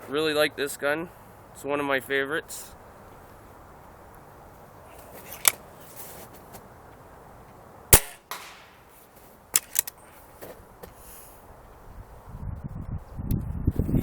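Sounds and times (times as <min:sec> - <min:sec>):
pellet rifle shot crack: 0:08.0 - 0:09.0.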